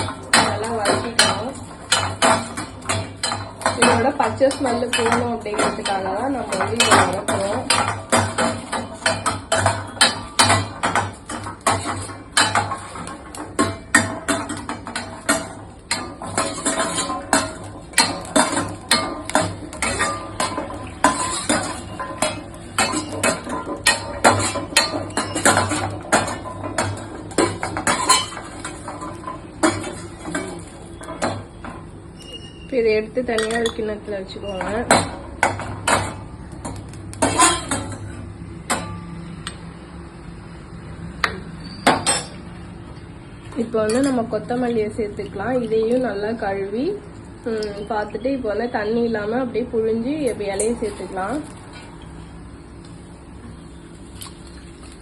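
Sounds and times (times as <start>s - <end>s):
metal spatula scraping a pan: 0.0s - 32.7s.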